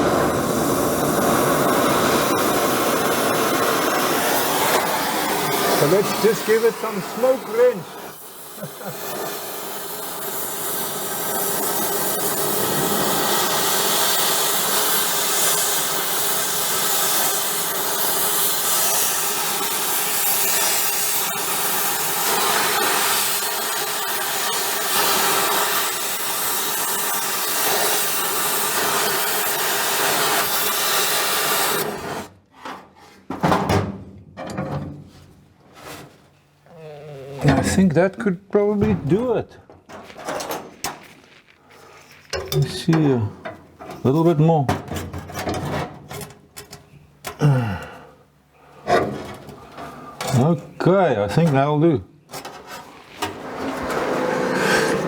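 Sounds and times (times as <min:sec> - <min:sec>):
torch flame hissing: 0:00.0 - 0:32.3.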